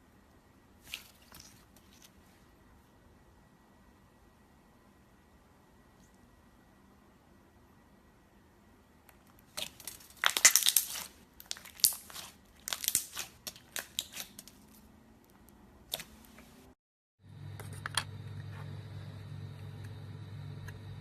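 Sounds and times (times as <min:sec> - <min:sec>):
slime crackling and crinkling: 0:00.8 - 0:02.2, 0:09.4 - 0:14.9
steady low hum: 0:15.0 - 0:21.0.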